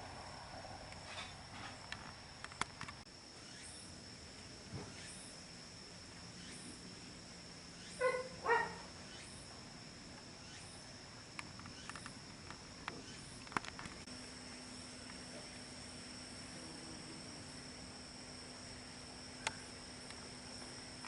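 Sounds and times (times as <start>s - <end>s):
insects chirring: 0.0s - 21.0s
low steady hum: 0.0s - 21.0s
dog barking: 8.0s - 8.9s.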